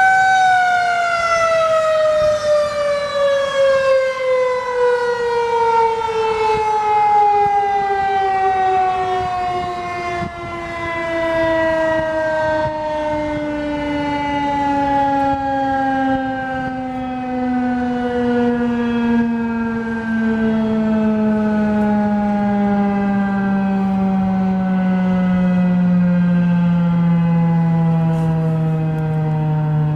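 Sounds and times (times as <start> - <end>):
warning siren winding down: 0.0 - 29.9.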